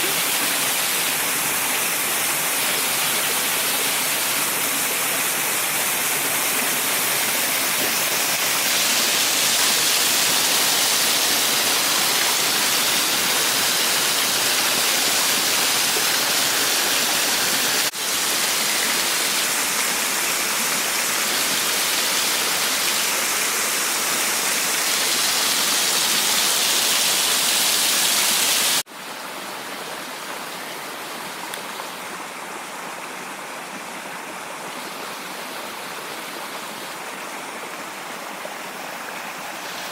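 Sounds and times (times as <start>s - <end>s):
waterfall rushing: 0.0s - 28.9s.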